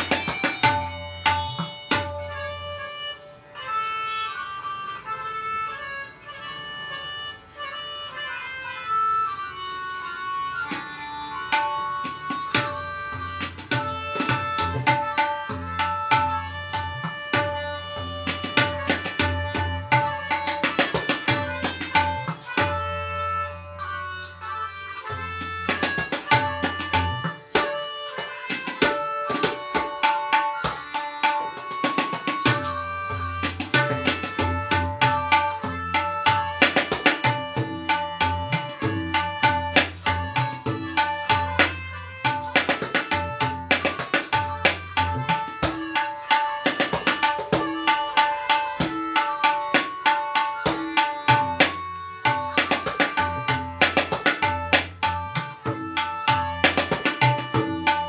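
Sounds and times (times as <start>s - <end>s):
tabla treble drum strokes: 0.0s - 2.6s, 10.5s - 24.4s, 25.0s - 58.0s
tabla bass drum strokes: 32.0s - 45.8s, 53.2s - 58.0s.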